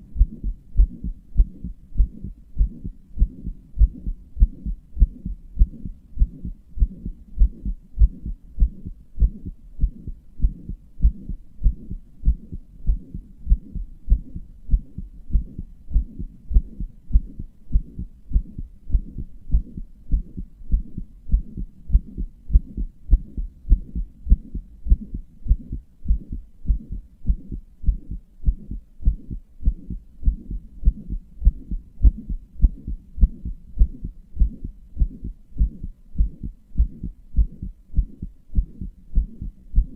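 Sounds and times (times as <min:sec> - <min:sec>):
heartbeat thumps: 0:00.0 - 0:39.9.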